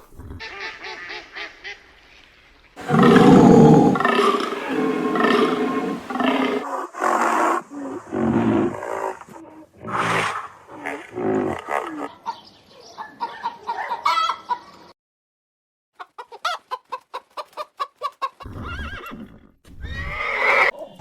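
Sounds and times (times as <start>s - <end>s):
chickens clucking: 2.8s - 6.6s.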